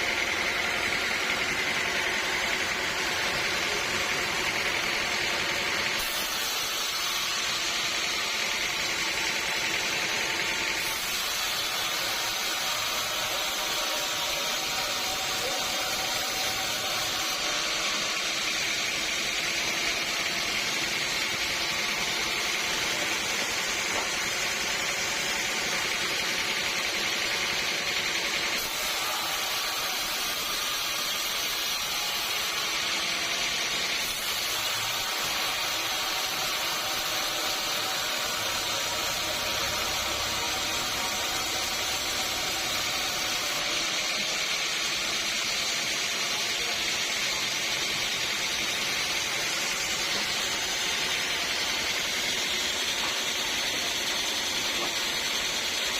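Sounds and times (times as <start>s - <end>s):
sawmill saw cutting log: 0.0s - 55.9s.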